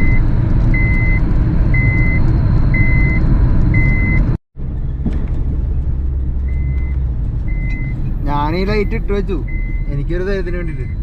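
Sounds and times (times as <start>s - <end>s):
car engine and road noise: 0.0s - 11.0s
high electronic warning beep: 8.6s - 10.0s.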